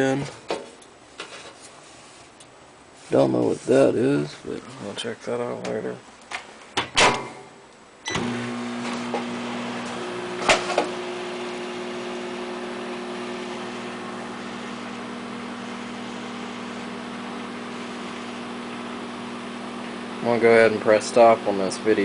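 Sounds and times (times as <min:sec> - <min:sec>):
microwave oven humming: 0:08.0 - 0:22.0.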